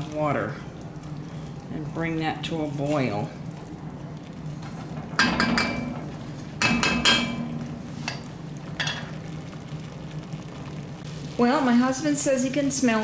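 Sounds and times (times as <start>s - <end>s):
low steady hum: 0.0s - 13.0s
metal utensil knocking on pot: 5.1s - 9.1s.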